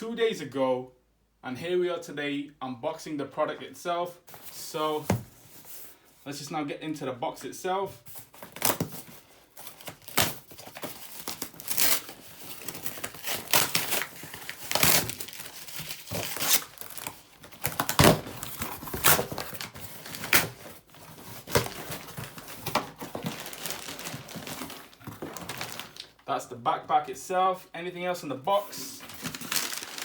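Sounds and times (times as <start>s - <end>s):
packaging rustling and crinkling: 8.1s - 26.2s, 28.8s - 30.0s
packaging ripping: 9.6s - 20.6s, 21.2s - 26.2s, 29.1s - 30.0s.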